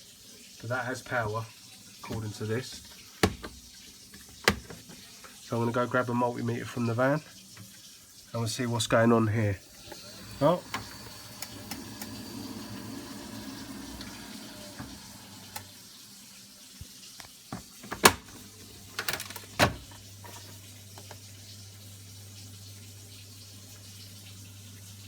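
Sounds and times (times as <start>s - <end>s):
water rushing through pipes: 0.1s - 25.0s
pipes knocking and clicking: 2.1s - 5.0s.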